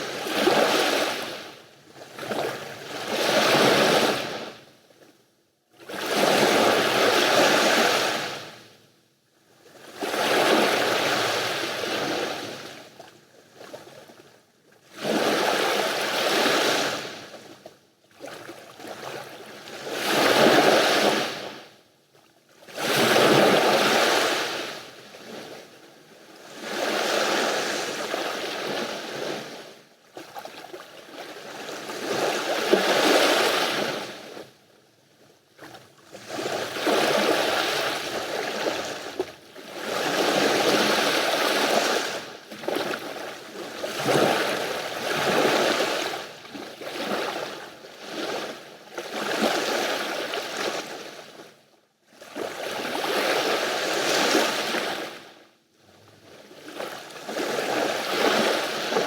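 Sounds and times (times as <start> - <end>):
sea waves breaking on beach: 15.0 - 17.2, 36.2 - 51.1, 56.6 - 59.0.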